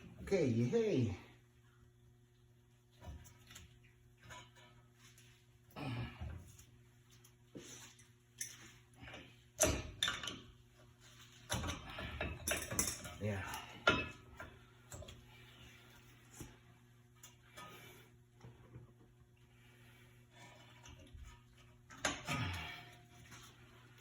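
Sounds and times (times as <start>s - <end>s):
metal tools clinking and clattering: 11.5s - 14.2s.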